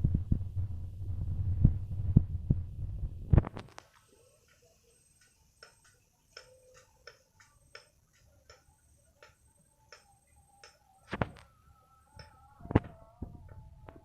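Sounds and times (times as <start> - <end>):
faint high pulsing chirp: 4.1 - 14.0.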